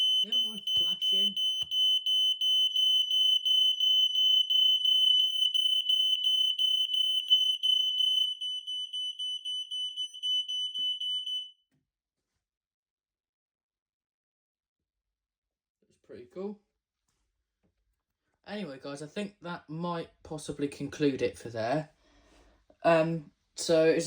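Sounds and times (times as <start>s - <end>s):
smoke alarm pulsing tone: 0.0s - 11.6s.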